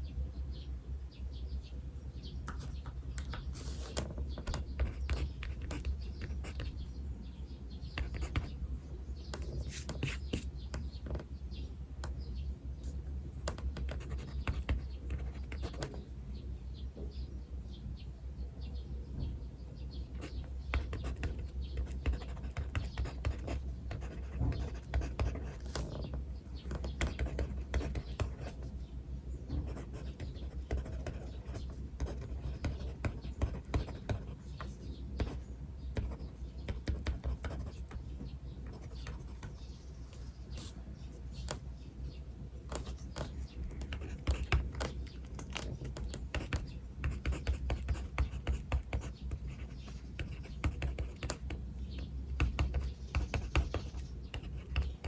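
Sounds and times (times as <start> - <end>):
birds chirping: 0.0 - 55.0
pen scratching on paper: 2.5 - 6.9, 8.0 - 8.6, 9.3 - 11.2, 12.8 - 16.0, 20.2 - 28.7, 29.6 - 35.4, 36.0 - 38.0, 38.7 - 41.6, 42.7 - 55.0.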